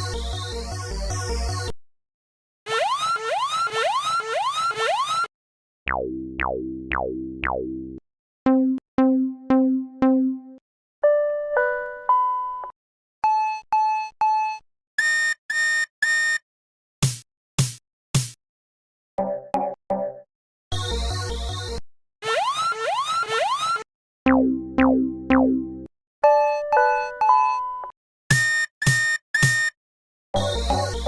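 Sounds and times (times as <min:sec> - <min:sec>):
electronic beeps: 0:28.3 - 0:29.7.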